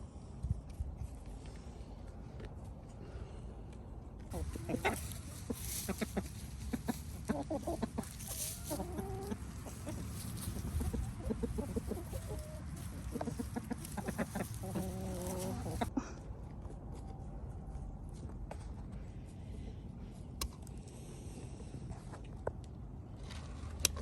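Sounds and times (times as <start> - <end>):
chickens clucking: 4.3 - 15.9.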